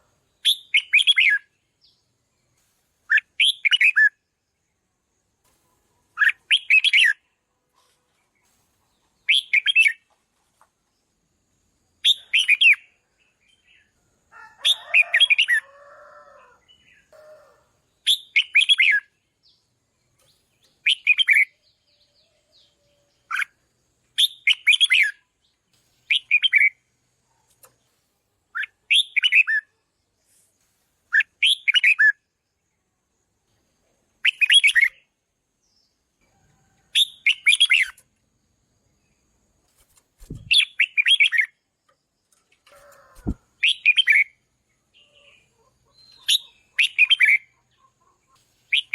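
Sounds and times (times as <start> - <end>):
bird whistled song phrases: 34.2 - 35.0.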